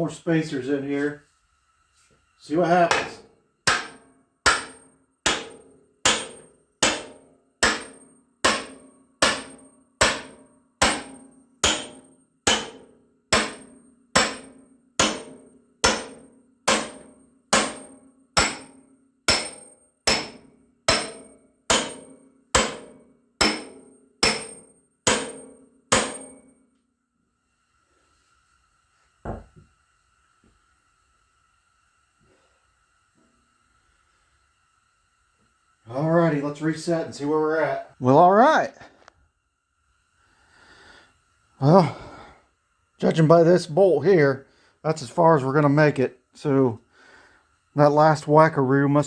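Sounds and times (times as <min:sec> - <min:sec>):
hammer striking steel wedges: 0:02.7 - 0:26.5.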